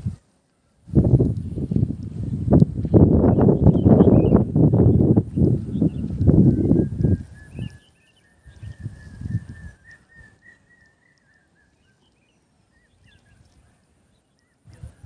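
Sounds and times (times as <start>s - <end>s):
small birds chirping: 0.4s - 15.0s
thin wavering whistling tone: 5.3s - 13.6s.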